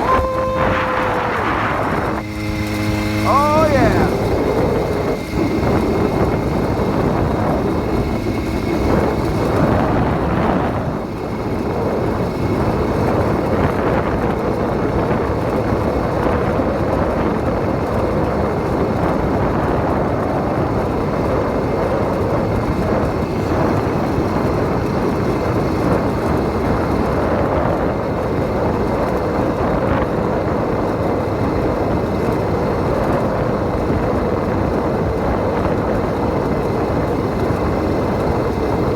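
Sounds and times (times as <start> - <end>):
motorized bicycle engine running: 0.0 - 7.2.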